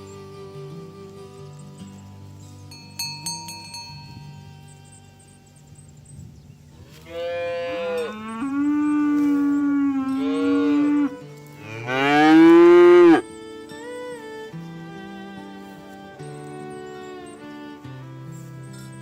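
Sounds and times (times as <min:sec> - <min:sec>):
cow mooing: 0:07.0 - 0:13.2.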